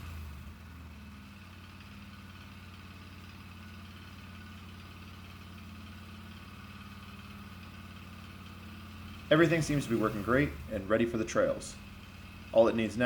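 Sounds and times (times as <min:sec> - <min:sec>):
atv engine idling: 0:00.0 - 0:13.0.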